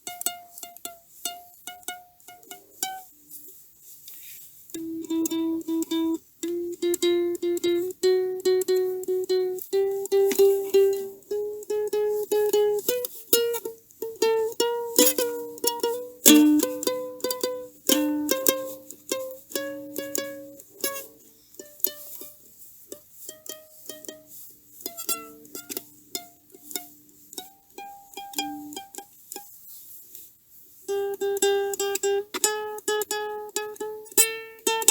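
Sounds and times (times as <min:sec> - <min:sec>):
plucked ukulele melody: 0:00.0 - 0:04.0, 0:04.7 - 0:29.6, 0:30.8 - 0:34.9.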